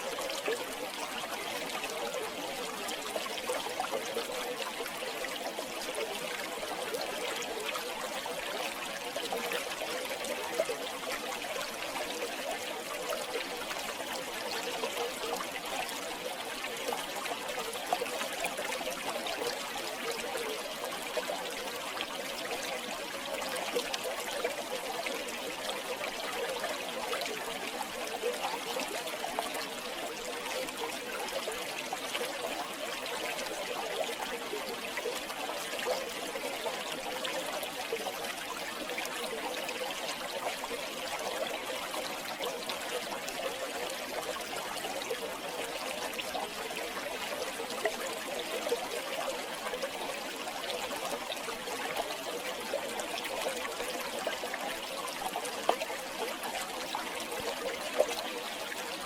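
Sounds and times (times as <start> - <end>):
river water babbling over stones: 0.0 - 59.0.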